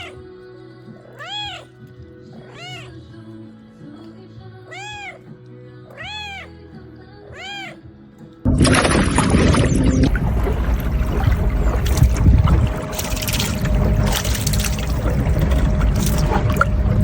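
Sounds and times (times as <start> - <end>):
cat meowing: 0.0 - 0.2, 1.0 - 3.1, 4.7 - 5.3, 5.9 - 6.6, 7.2 - 7.9
faint background music: 0.0 - 17.0.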